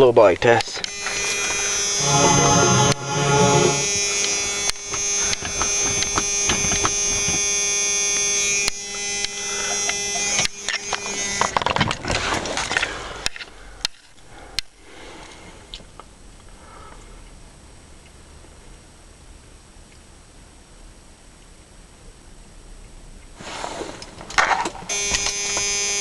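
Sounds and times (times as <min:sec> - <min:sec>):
starter motor cranking: 0:02.7 - 0:12.9.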